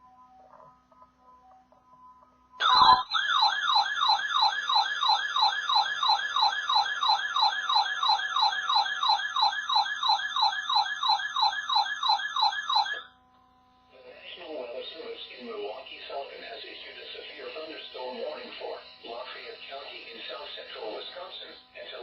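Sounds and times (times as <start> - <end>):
weather radio alert alarm: 2.6 - 13.0.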